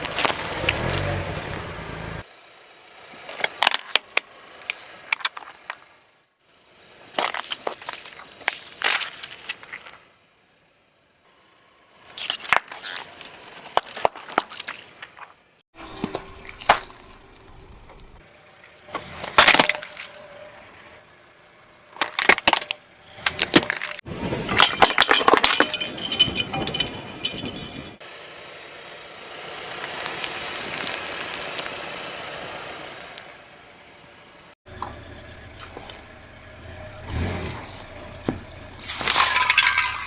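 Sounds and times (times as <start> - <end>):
tyre crushing brittle objects: 0.0 - 1.2, 7.1 - 10.0, 12.2 - 17.5, 22.0 - 27.8, 29.7 - 33.2, 38.7 - 40.0.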